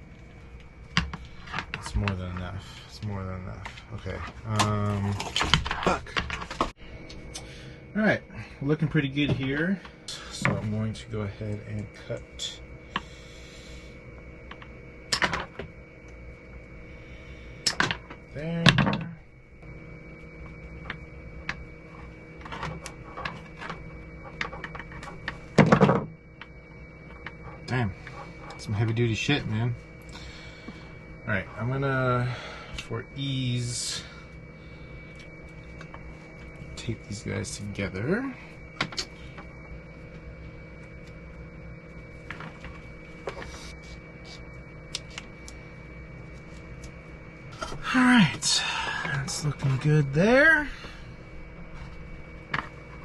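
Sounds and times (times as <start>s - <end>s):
faint steady hum: 0.0s - 53.0s
electrical tape crackling: 17.6s - 31.8s.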